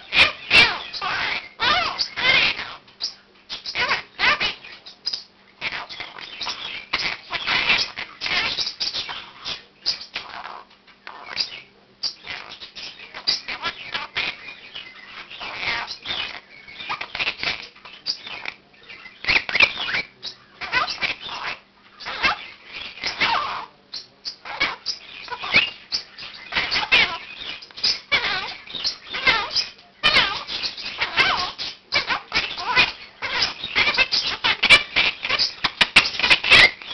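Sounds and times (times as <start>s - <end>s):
other birds calling: 0.0s - 36.9s
parakeet chirping and squawking: 0.0s - 36.9s.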